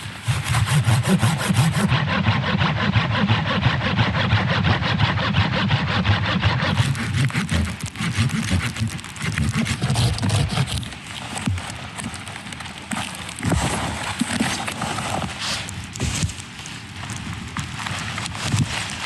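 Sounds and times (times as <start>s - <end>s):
hand saw cutting wood: 0.0s - 11.6s, 12.9s - 16.3s.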